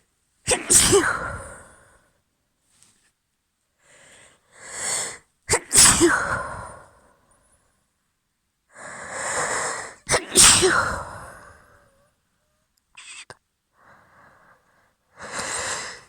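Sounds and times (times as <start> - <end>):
woman sneezing: 0.5 - 1.4, 5.5 - 6.4, 10.1 - 11.0
woman breathing in: 13.8 - 16.0.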